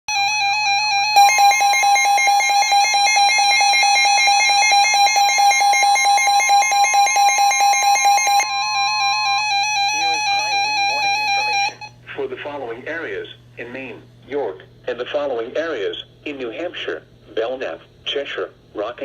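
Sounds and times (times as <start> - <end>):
looping electronic tune: 0.1 - 11.9
steady high alert tone: 0.1 - 12.0.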